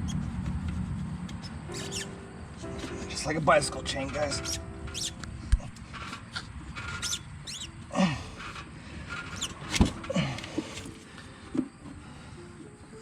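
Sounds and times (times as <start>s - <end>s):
rubber belt squeaking: 0.0s - 0.5s, 1.3s - 3.1s, 4.1s - 10.9s.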